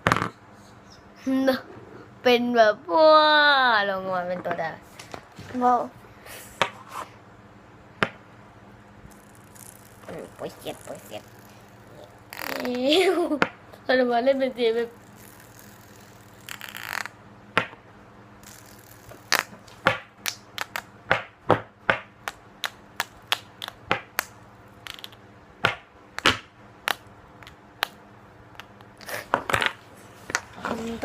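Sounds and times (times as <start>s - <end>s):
fidget spinner clicking: 9.1s - 12.9s, 14.8s - 17.1s, 18.4s - 19.5s, 24.8s - 25.2s.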